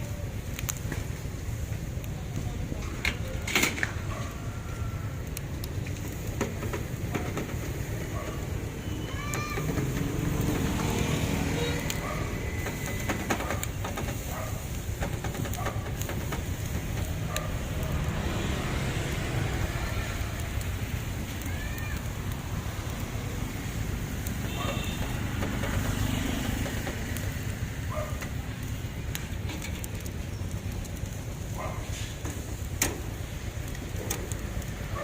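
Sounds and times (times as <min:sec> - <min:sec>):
low street rumble: 0:00.0 - 0:35.0
scattered clicks and clatter: 0:00.5 - 0:04.3, 0:05.2 - 0:35.0
faint voices or chirps: 0:08.7 - 0:09.8.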